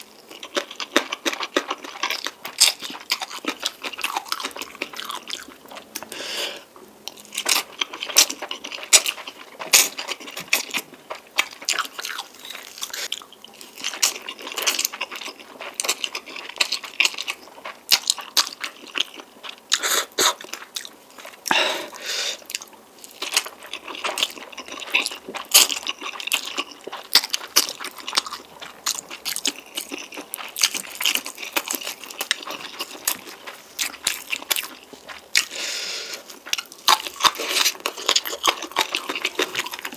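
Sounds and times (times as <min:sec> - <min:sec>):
person chewing noodles: 0:00.0 - 0:39.9
wet mouth sounds: 0:19.7 - 0:20.7.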